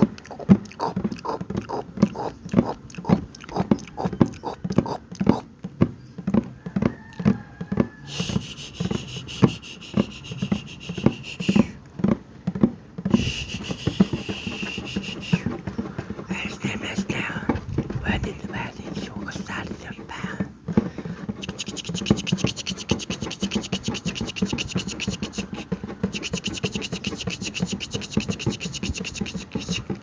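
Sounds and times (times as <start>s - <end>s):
wet mouth pops and clicks: 0.0s - 5.5s, 21.4s - 29.9s
hiss: 8.0s - 11.8s, 13.1s - 16.7s, 21.0s - 30.0s.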